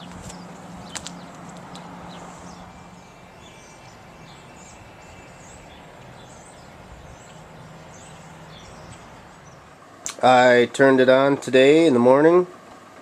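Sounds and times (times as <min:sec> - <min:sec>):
small bird chirping: 0:00.0 - 0:09.8
low hum: 0:00.0 - 0:10.1.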